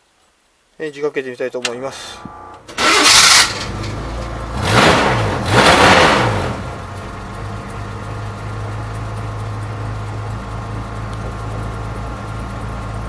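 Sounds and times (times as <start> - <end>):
truck engine idling: 6.6 - 13.0.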